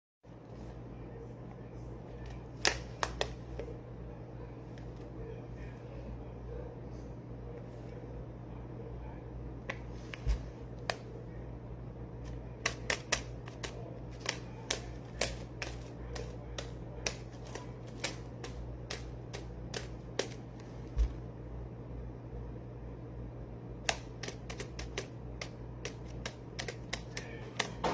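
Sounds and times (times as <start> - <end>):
steady low hum: 0.3 - 27.9.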